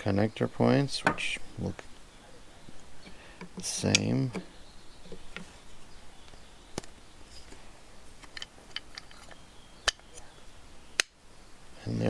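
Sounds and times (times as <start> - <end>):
connector popping in: 3.4 - 4.5
plastic clicks: 3.4 - 5.5, 8.2 - 10.3.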